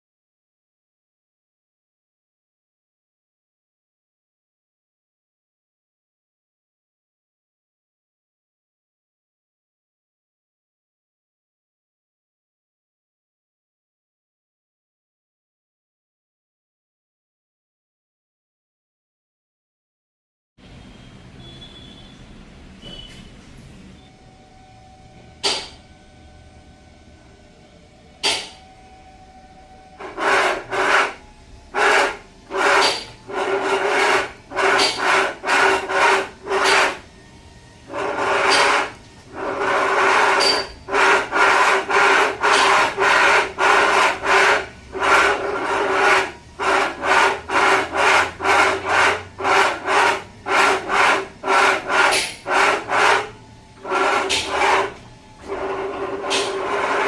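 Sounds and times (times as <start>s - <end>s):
steering rack motor grinding: 24.6s - 26.3s, 27.9s - 57.0s.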